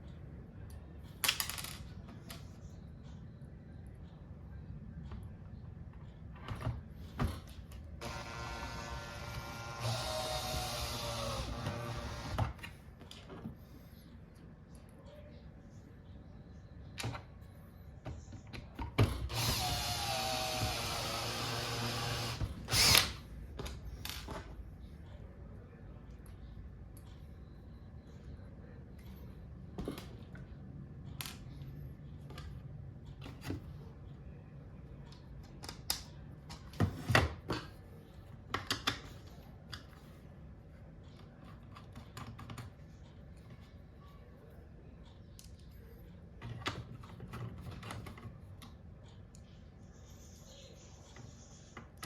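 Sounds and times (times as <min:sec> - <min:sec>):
low steady hum: 0:00.0 - 0:52.0
power drill running: 0:08.0 - 0:12.4, 0:19.3 - 0:23.1.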